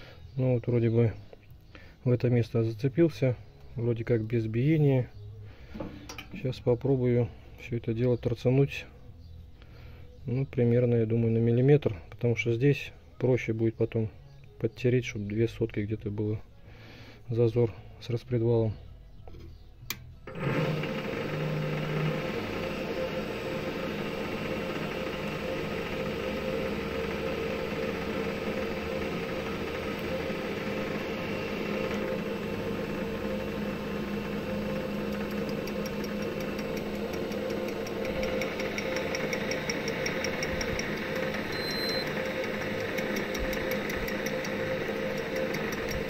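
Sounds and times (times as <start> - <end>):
metal lathe humming: 20.3 - 46.0
harsh high-pitched cutting sound: 21.6 - 46.0.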